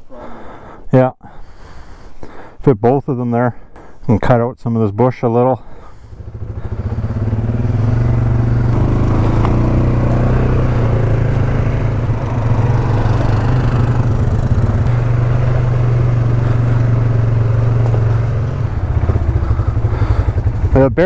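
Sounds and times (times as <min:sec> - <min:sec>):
atv engine running: 0:05.8 - 0:21.0.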